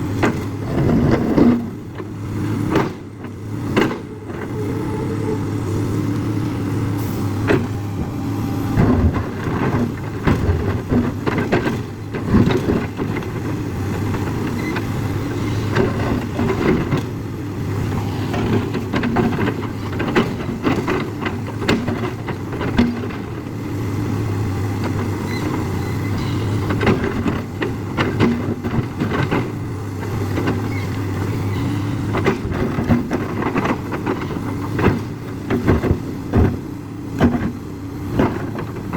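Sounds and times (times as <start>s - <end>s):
excavator diesel engine running: 0.0s - 38.9s
knocks and clanks: 0.2s - 4.6s, 7.4s - 14.8s.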